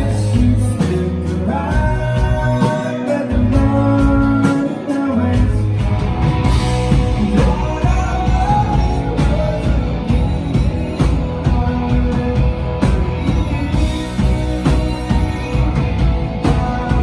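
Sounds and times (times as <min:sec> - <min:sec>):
bass guitar: 0:00.0 - 0:17.0
guitars: 0:00.0 - 0:17.0
drum beat: 0:05.4 - 0:17.0.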